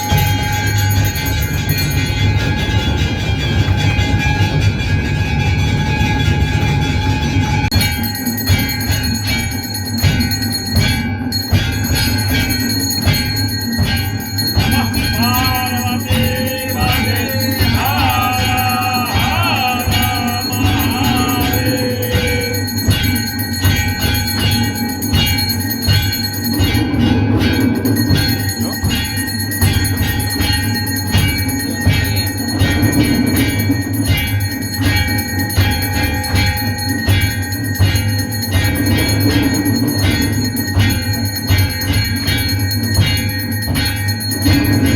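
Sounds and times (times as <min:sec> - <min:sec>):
bells ringing: 0:00.0 - 0:44.9
clanging percussion beat: 0:00.0 - 0:44.9
voices singing: 0:14.7 - 0:23.2.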